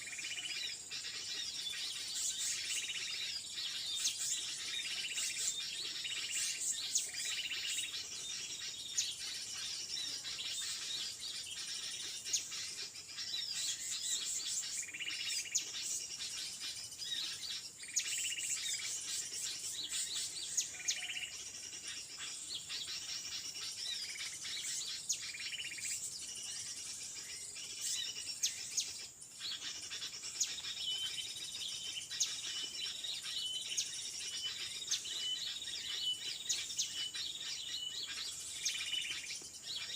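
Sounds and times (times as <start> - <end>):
birds chirping and calling: 0.0 - 39.9
faint insect drone: 0.0 - 39.9.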